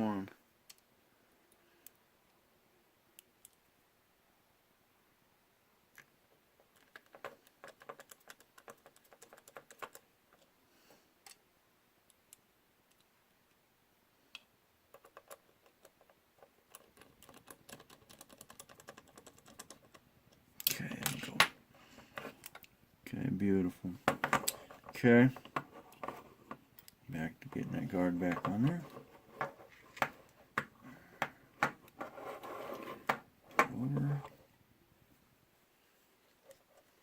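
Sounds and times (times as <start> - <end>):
small parts clicking and tapping: 5.9 - 10.5, 11.2 - 11.4, 12.0 - 13.6, 14.3 - 22.8, 24.0 - 32.1.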